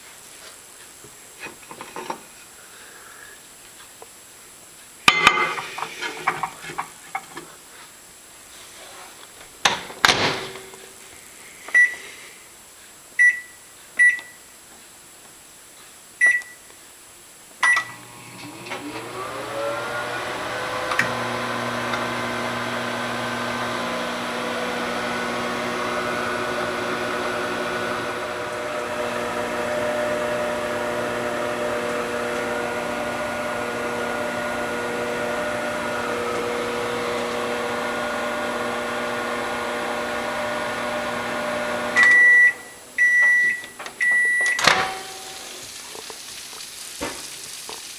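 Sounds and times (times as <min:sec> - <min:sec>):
keypad beeps: 0:16.2 - 0:16.6, 0:42.0 - 0:44.7
microwave oven humming: 0:17.8 - 0:42.8.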